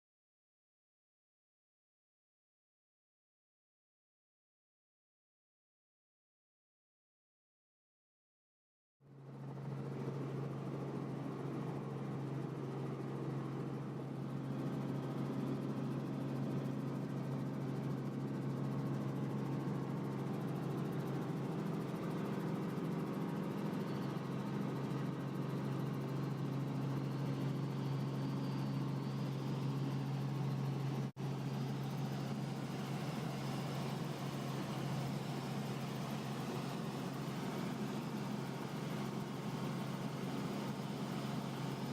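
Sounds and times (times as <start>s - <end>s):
helicopter cabin drone: 9.0s - 41.9s
faint high whine: 9.5s - 41.9s.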